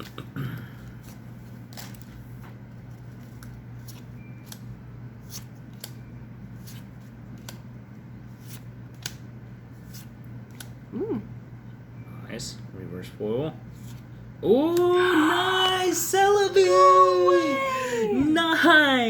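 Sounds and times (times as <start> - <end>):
low steady hum: 0.0 - 19.0
trading cards clicking and snapping: 3.3 - 6.0, 6.6 - 7.7, 8.4 - 10.8.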